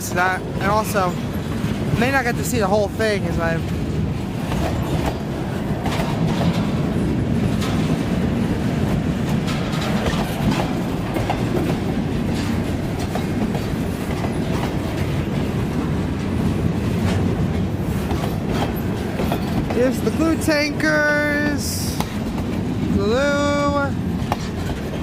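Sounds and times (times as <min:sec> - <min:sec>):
train wheels clacking over rail joints: 0:00.0 - 0:23.0, 0:24.0 - 0:25.0
low rumble of train cars: 0:00.0 - 0:25.0.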